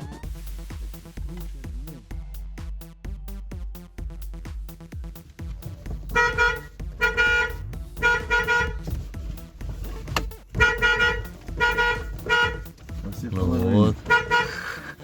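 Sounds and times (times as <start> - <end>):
car horn blasts: 6.1 - 9.0, 10.0 - 12.9, 13.5 - 14.8.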